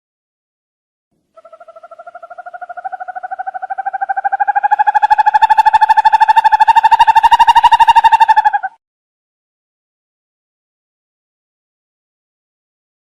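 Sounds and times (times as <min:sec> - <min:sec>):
owl trilling: 0:01.4 - 0:08.8.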